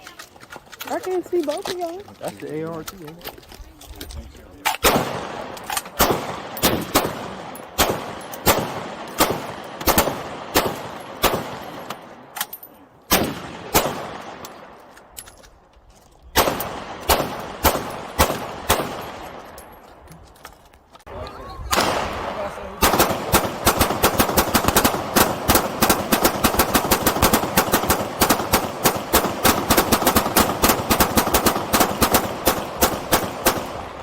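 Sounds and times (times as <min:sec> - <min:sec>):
gunshots echoing: 0:04.7 - 0:12.4, 0:13.1 - 0:14.9, 0:16.3 - 0:19.6, 0:21.7 - 0:34.0.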